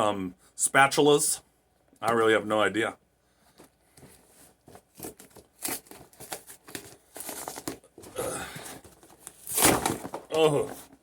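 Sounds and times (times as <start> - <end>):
cardboard packing crinkling: 4.6 - 11.0
cardboard tearing: 4.9 - 8.2, 9.0 - 10.9.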